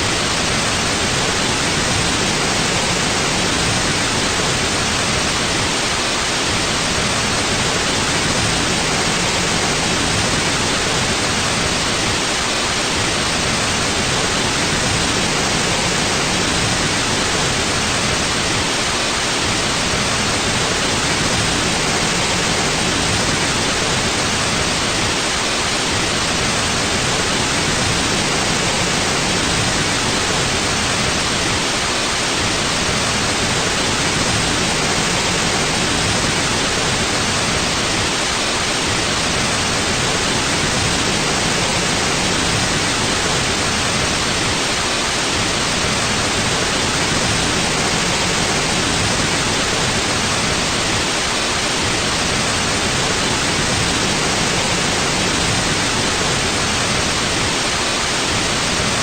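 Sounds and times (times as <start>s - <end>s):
steady white noise: 0.0s - 59.0s.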